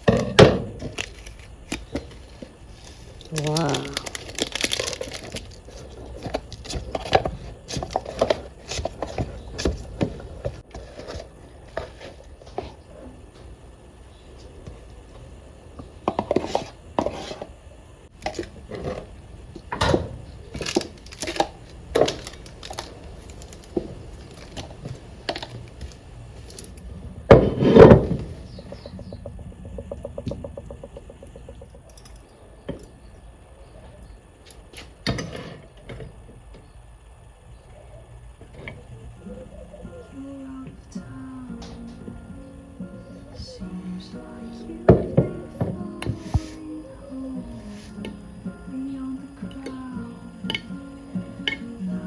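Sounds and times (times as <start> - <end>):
kitchen items knocking and clattering: 0.0 - 12.0.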